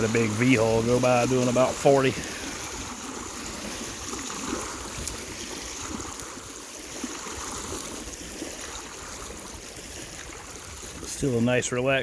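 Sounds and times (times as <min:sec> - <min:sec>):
small waves lapping on rocks: 0:00.0 - 0:12.0.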